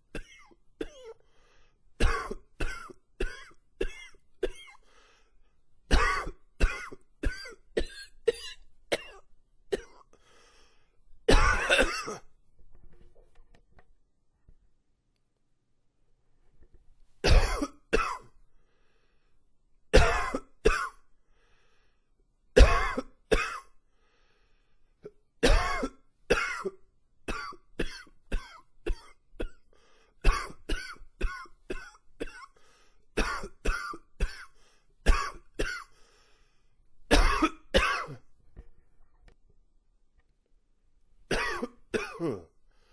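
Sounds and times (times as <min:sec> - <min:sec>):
man coughing: 0:02.0 - 0:04.8, 0:05.9 - 0:10.1, 0:11.3 - 0:12.3, 0:17.2 - 0:18.3, 0:20.0 - 0:21.0, 0:22.6 - 0:23.7, 0:25.4 - 0:29.6, 0:30.3 - 0:32.5, 0:33.2 - 0:34.5, 0:35.1 - 0:35.9, 0:37.1 - 0:38.2, 0:41.3 - 0:42.6.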